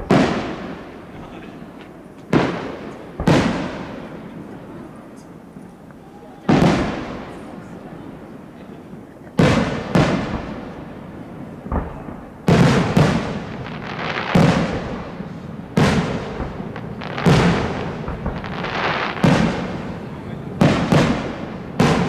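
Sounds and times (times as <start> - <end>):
firework shells bursting: 11.5 - 22.0.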